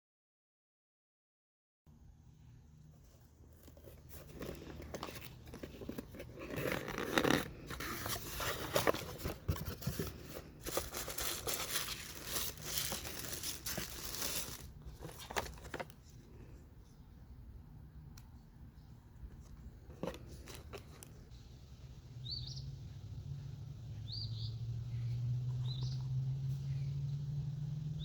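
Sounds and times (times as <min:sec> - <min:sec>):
paper and plastic crinkling: 0:03.5 - 0:16.2
packaging tearing: 0:04.2 - 0:15.9.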